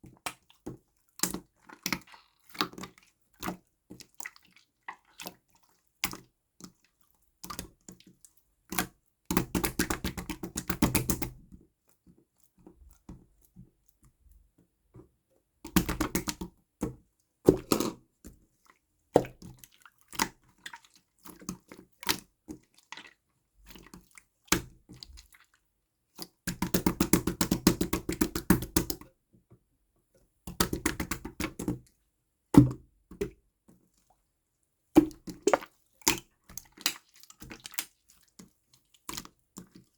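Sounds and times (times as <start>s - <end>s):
slime squishing with wet clicks: 0.0s - 13.1s, 35.0s - 39.9s
small air bubbles popping: 35.0s - 36.2s.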